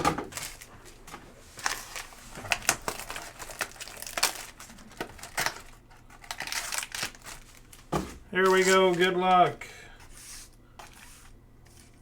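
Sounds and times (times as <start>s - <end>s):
plastic wrapper crinkling: 1.6s - 9.2s.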